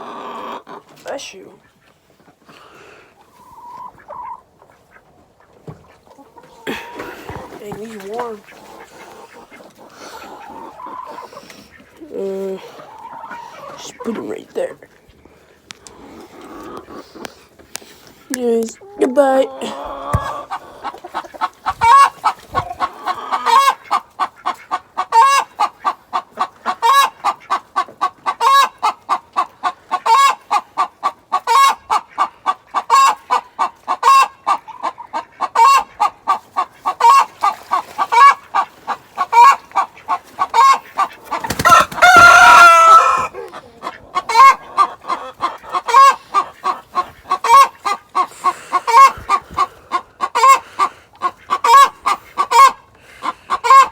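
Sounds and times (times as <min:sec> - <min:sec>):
hen cackling: 0:00.0 - 0:14.9, 0:15.5 - 0:17.5, 0:18.6 - 0:53.9
hen squawking: 0:03.3 - 0:05.0, 0:06.4 - 0:14.7, 0:18.4 - 0:26.0, 0:39.2 - 0:53.9.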